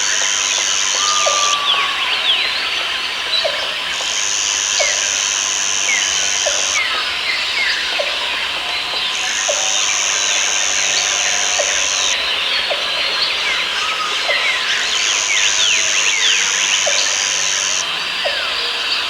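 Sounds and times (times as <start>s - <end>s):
high insect buzz: 0.0s - 2.0s, 3.9s - 7.0s, 9.1s - 12.2s, 14.9s - 17.8s
birds chirping and whistling: 0.0s - 3.5s
steady hiss: 14.9s - 17.8s.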